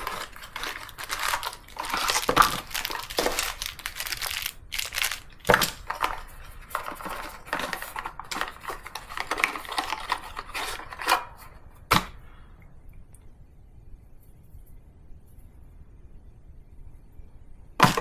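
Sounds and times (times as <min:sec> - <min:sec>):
packaging clicks and rustling: 0:00.0 - 0:11.5.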